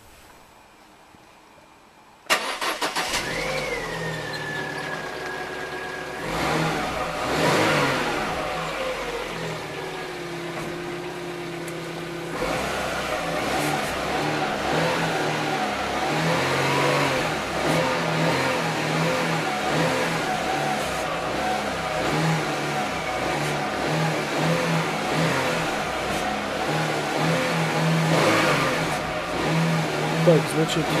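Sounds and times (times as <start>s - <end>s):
car engine running: 2.3s - 31.0s.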